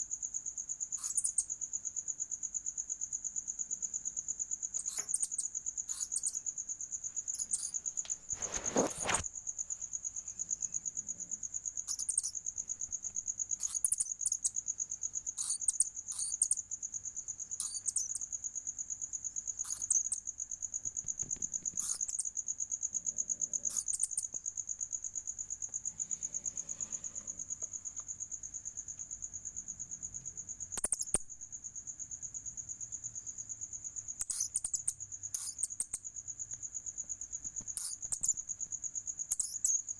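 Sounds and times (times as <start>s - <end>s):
crickets chirping: 0.0s - 39.9s
rustling thump: 8.3s - 9.3s.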